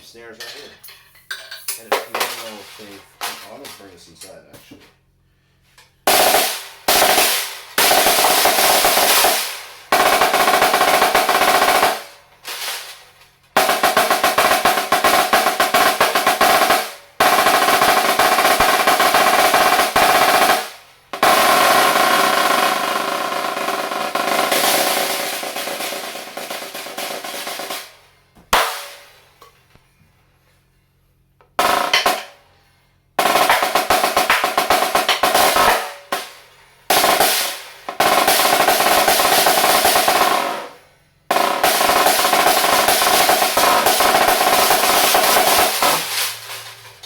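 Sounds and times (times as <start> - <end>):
snare drum rolls: 6.1 - 13.0, 13.6 - 29.2, 33.2 - 46.9
sharp snare drum hit: 24.4 - 29.2, 33.3 - 36.3, 42.0 - 46.6.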